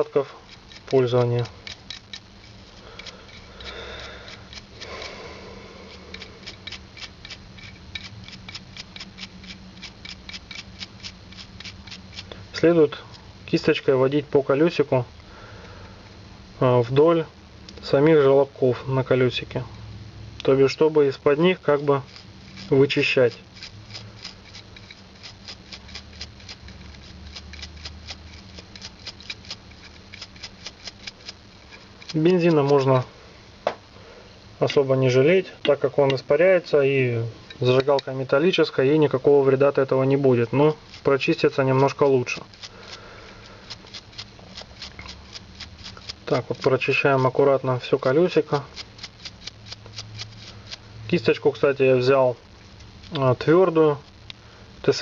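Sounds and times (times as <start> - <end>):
brush scrubbing lighter wheel: 0.0 - 13.7, 21.6 - 33.1, 34.6 - 35.0, 39.7 - 50.8.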